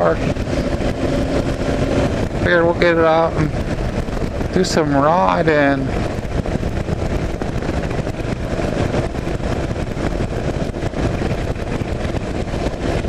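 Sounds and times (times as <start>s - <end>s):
motorcycle engine running: 0.0s - 13.0s
wind rushing over microphone: 0.0s - 13.0s.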